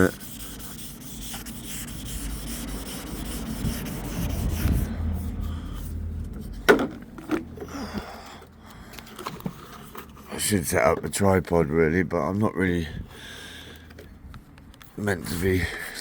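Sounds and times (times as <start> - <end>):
wet sanding paper scrubbing: 0.0 - 5.8.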